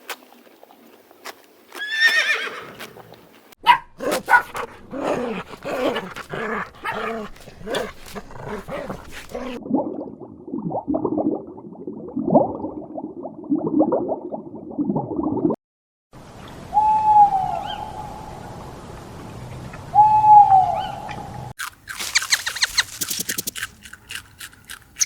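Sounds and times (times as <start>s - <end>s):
low rough animal sounds: 4.0s - 9.6s
hooting calls: 22.0s - 23.5s.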